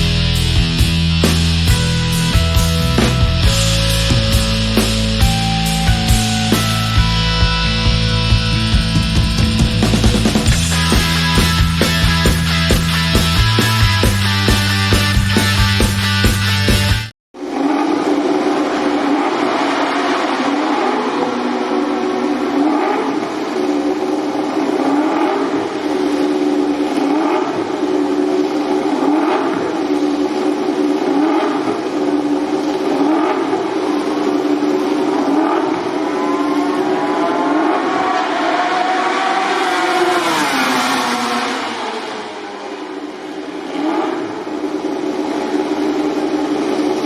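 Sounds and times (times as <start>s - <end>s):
racing motorcycle engine idling: 0.0s - 17.1s
engine throttle blips: 0.0s - 47.0s.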